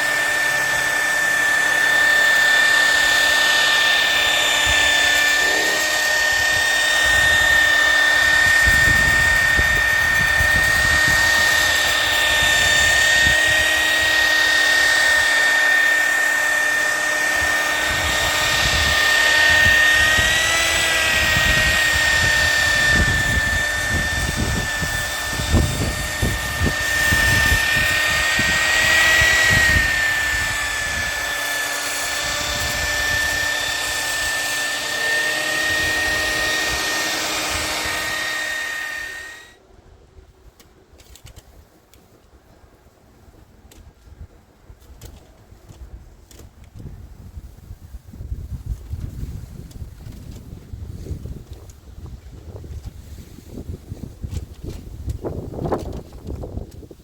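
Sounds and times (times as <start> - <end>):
car polisher motor whine: 0.0 - 39.6.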